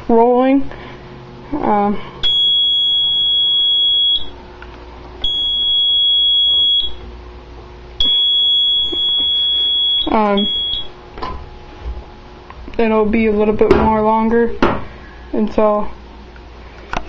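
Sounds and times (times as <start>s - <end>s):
fire alarm beeping: 2.2s - 4.4s, 5.2s - 7.0s, 8.0s - 11.0s.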